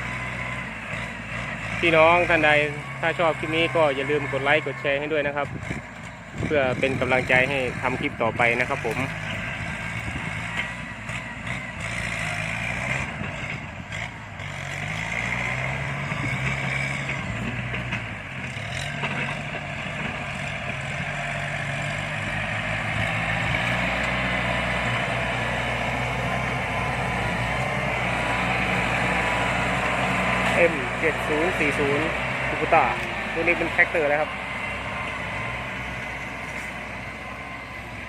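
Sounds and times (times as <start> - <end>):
tractor engine running under load: 0.0 - 38.0.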